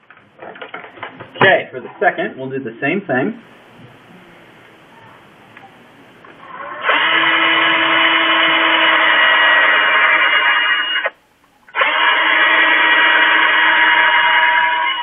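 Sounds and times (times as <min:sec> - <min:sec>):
electric drill boring plastic: 0:06.4 - 0:11.2, 0:11.8 - 0:15.0.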